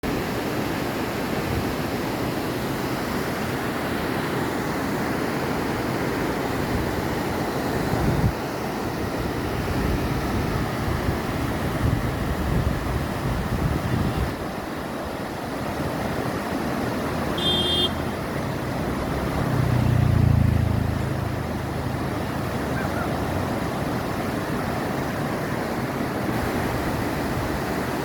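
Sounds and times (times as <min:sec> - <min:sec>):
river rushing water: 0:00.0 - 0:28.0
wind buffeting microphone: 0:07.7 - 0:08.4, 0:09.0 - 0:14.8.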